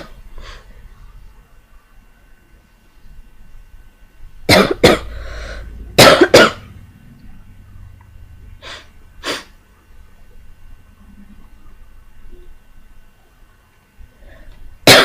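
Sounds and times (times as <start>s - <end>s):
person coughing: 4.5s - 5.3s, 6.0s - 6.7s.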